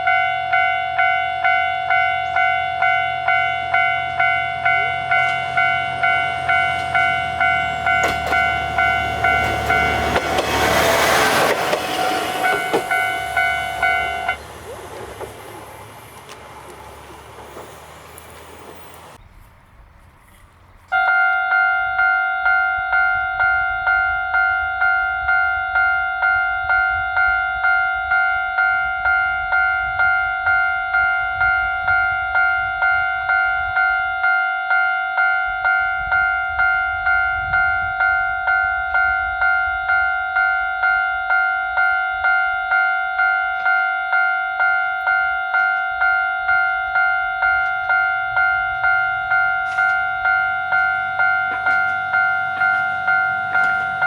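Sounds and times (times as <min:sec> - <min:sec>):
level-crossing alarm clanging: 0:00.0 - 0:19.2, 0:20.9 - 0:54.0
passing train noise: 0:00.0 - 0:54.0.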